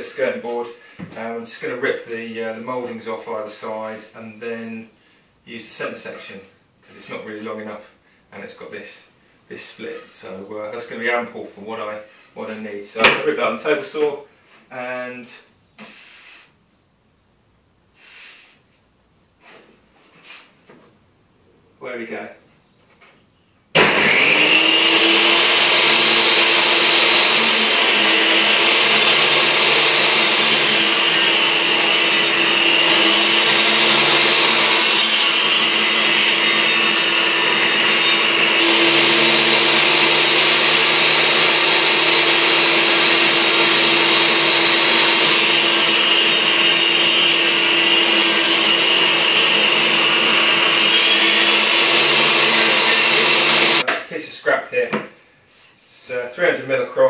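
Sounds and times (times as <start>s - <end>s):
table saw humming: 23.8s - 53.8s
saw blade cutting wood: 23.8s - 53.9s.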